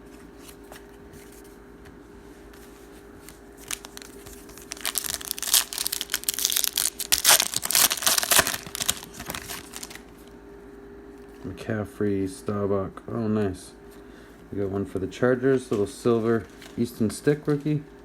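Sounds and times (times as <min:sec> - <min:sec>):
plastic wrapper tearing and crinkling: 0:03.6 - 0:10.1.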